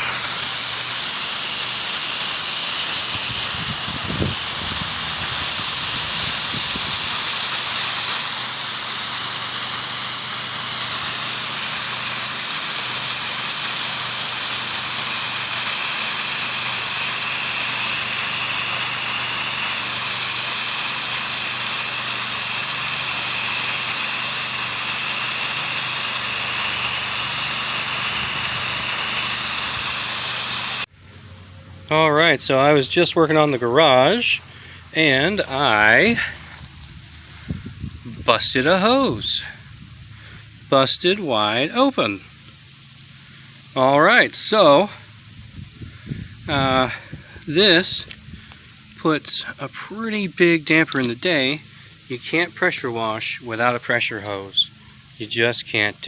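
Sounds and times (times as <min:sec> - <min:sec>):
high-pressure water spray hiss: 0:00.0 - 0:30.9
pressure washer engine hum: 0:00.0 - 0:56.0.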